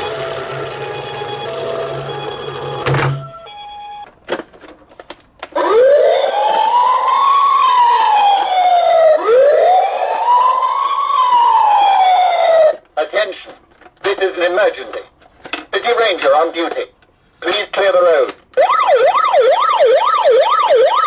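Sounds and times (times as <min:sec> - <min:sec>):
toy electronic wail siren: 0:05.6 - 0:12.8, 0:18.6 - 0:21.0.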